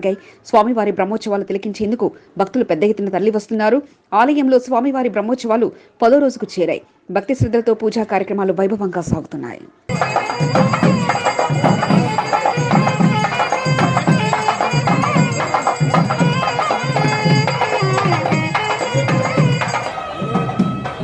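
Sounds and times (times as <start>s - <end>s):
steady drum beat: 9.9s - 21.0s
wavering melody: 9.9s - 21.0s.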